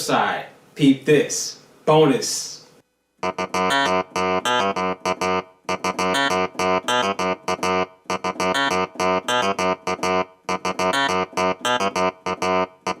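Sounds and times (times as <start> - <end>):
keyboard piano-like chord stabs: 3.2 - 13.0.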